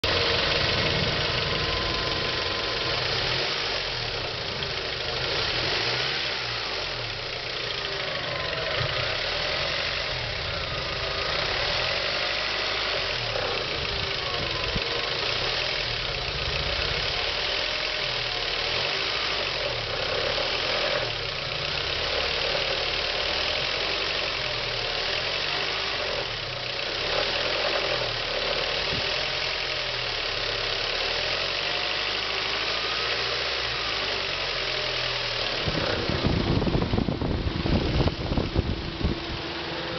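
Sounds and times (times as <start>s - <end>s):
car engine running: 0.0s - 39.9s
odd noise from engine: 0.0s - 39.9s.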